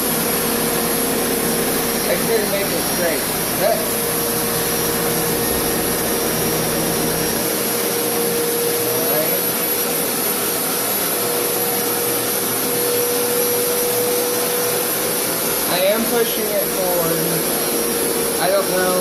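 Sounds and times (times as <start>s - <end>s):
carpet cleaner running: 0.0s - 19.0s.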